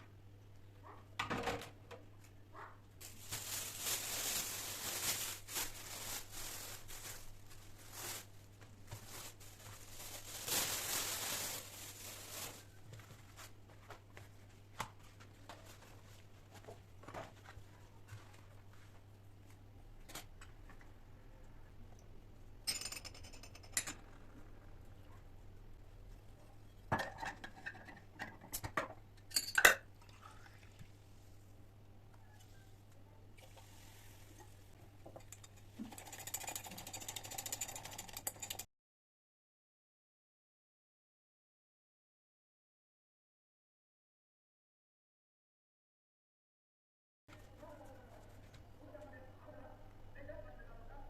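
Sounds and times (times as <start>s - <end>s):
hands rustling: 3.0s - 13.6s.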